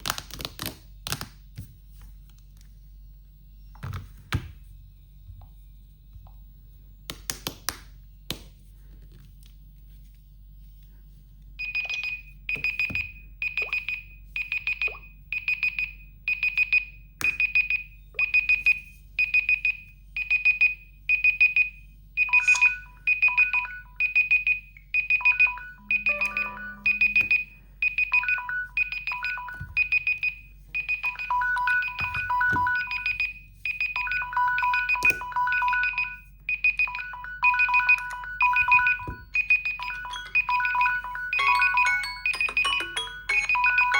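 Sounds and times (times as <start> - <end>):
high electronic beeps: 22.2 - 24.4, 25.1 - 30.3, 30.9 - 33.3, 34.0 - 43.9
lower two-note tone: 25.4 - 27.8.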